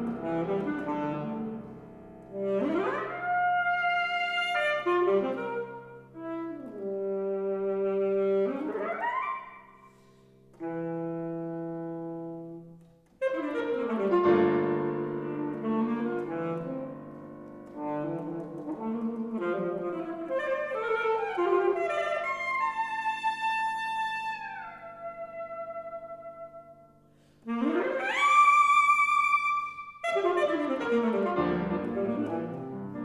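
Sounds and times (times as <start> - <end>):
alto saxophone: 0.0 - 33.0
piano: 0.0 - 33.0.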